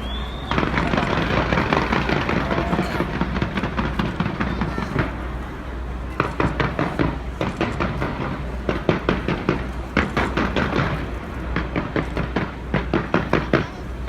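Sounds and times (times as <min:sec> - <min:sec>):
fireworks popping and banging: 0:00.0 - 0:14.0.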